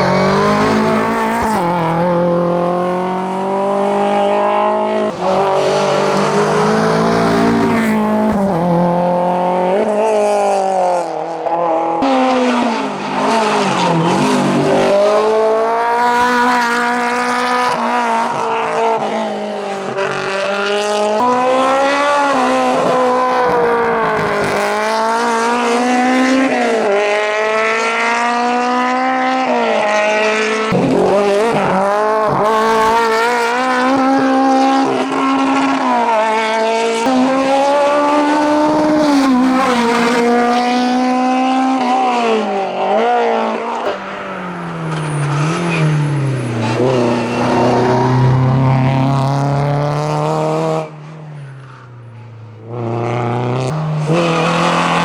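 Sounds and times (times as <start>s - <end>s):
race car engine revving: 0.0s - 55.0s.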